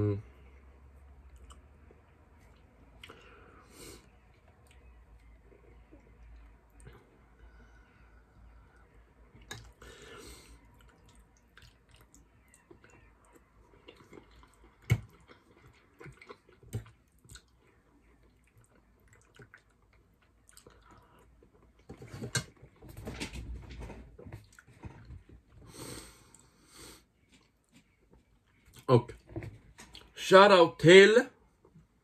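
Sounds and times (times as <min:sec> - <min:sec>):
chewing and wet mouth noises: 0:00.8 - 0:07.6, 0:08.4 - 0:22.0, 0:24.3 - 0:25.6, 0:26.2 - 0:28.9.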